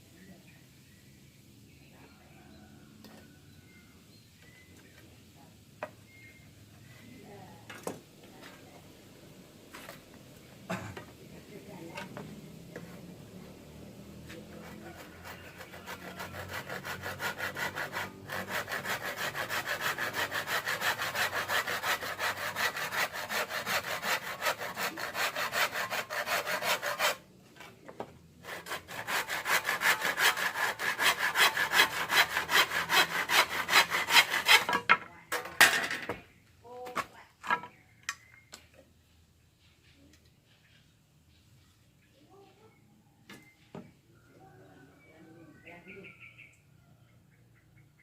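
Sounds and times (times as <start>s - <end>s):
saw cutting bamboo: 11.8s - 27.2s, 28.4s - 34.9s.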